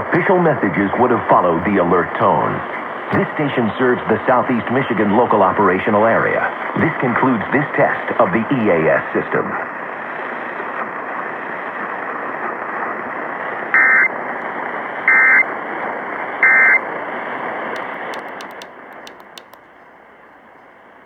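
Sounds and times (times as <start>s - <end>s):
radio hiss: 0.0s - 16.8s
sharp clicks: 17.8s - 19.9s.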